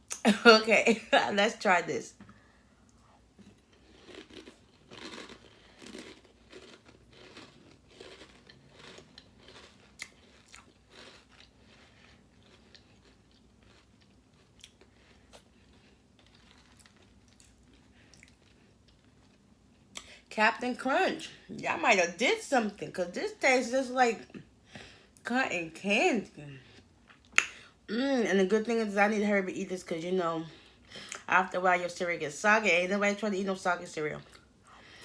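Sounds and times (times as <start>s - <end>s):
person chewing cereal crunching: 3.4s - 20.1s.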